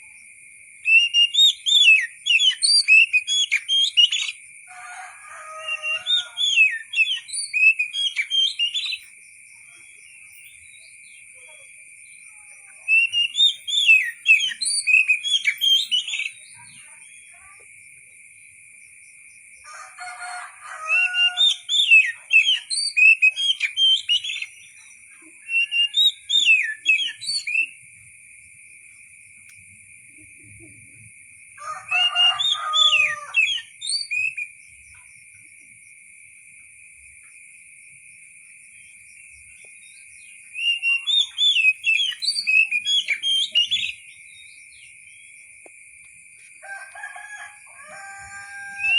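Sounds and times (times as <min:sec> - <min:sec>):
bird singing whistled notes: 0:00.8 - 0:04.4, 0:05.6 - 0:17.4, 0:20.9 - 0:27.9, 0:31.9 - 0:34.6, 0:38.8 - 0:45.5, 0:48.2 - 0:48.9.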